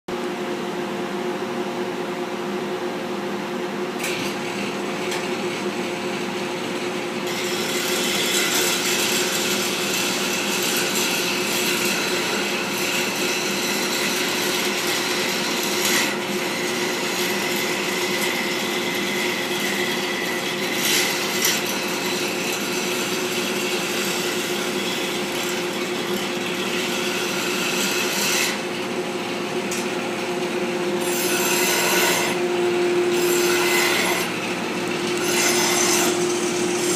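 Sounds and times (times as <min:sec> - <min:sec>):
tool cutting spinning wood: 0:04.0 - 0:36.9
lathe motor humming: 0:04.1 - 0:36.9.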